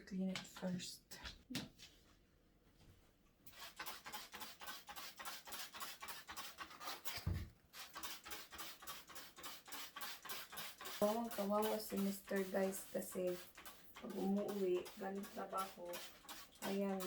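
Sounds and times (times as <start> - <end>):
fast rhythmic scrubbing: 3.5 - 17.0.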